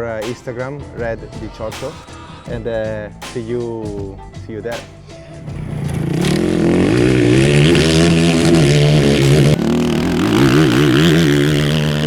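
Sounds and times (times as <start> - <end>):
motorcycle engine revving: 5.1 - 12.0.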